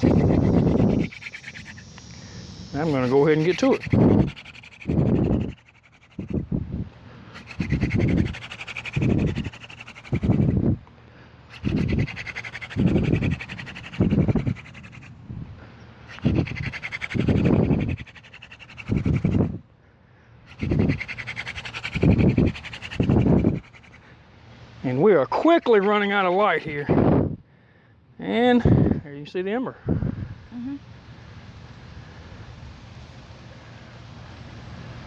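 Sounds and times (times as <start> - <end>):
hand drill rubbing on wood: 0.0 - 1.9, 2.7 - 6.5, 7.4 - 10.7, 11.6 - 15.1, 16.1 - 19.5, 20.5 - 23.9.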